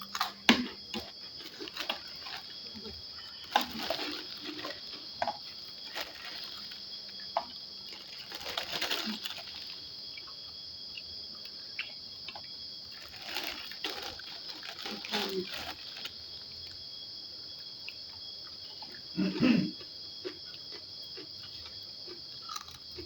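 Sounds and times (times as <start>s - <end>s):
chewing and mouth smacking: 20.2s - 23.0s.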